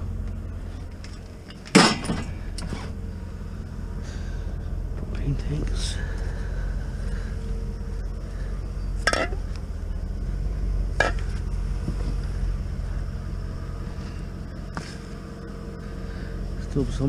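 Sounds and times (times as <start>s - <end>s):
steady low rumble: 0.0s - 17.0s
scrap metal clanks: 0.9s - 3.0s, 9.0s - 9.5s, 11.0s - 12.2s.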